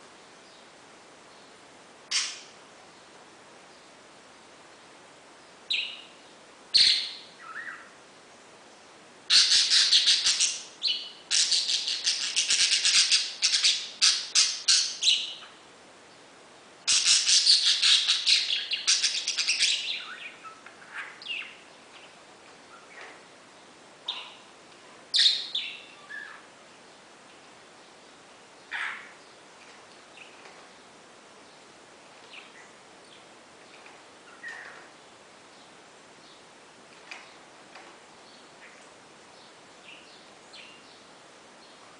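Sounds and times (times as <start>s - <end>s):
parakeet chirping and chattering: 2.1s - 2.5s, 6.7s - 7.7s, 9.3s - 15.4s, 16.9s - 21.5s, 25.1s - 26.3s.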